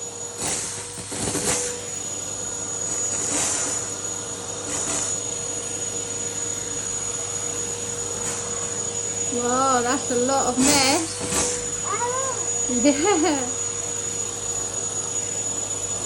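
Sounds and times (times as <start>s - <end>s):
vacuum cleaner whining: 0.0s - 16.0s.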